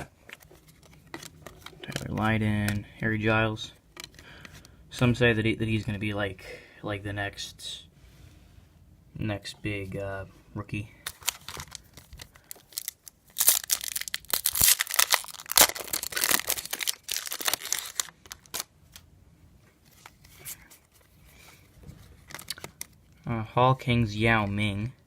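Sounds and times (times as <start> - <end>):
cards rustling and clicking: 0.0 - 2.8, 11.0 - 19.0, 19.8 - 23.1
foil wrapper tearing and crinkling: 11.1 - 18.7.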